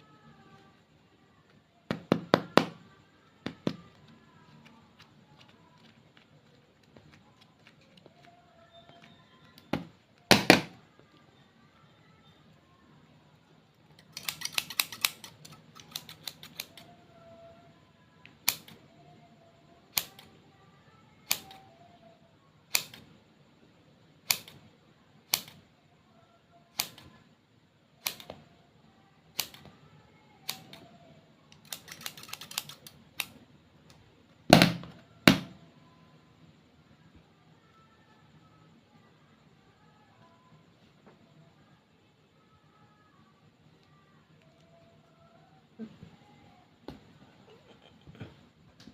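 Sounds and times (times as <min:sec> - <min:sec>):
sharp clicks: 0:14.0 - 0:16.9, 0:18.4 - 0:18.8, 0:22.7 - 0:23.0, 0:24.3 - 0:24.6, 0:25.3 - 0:25.6, 0:31.5 - 0:34.0.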